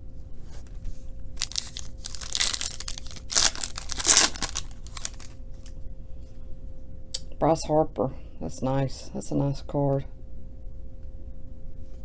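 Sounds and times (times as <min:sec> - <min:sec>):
foil wrapper tearing and crinkling: 0:01.4 - 0:05.7.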